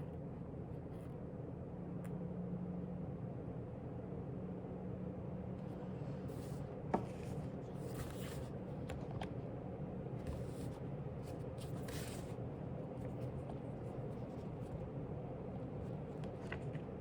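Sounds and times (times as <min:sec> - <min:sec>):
room hum: 0:00.0 - 0:17.0
paper rustling: 0:10.2 - 0:12.4.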